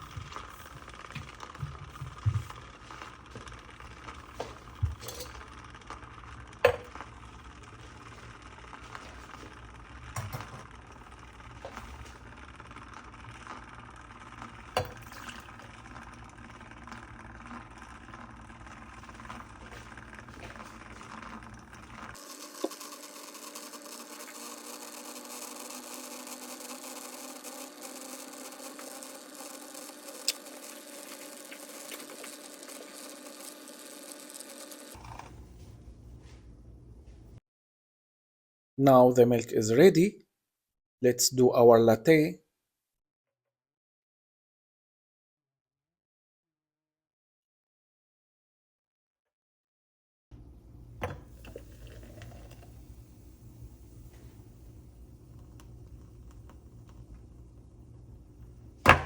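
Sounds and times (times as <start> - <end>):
milk frother whirring: 0.0 - 37.3, 50.4 - 59.0.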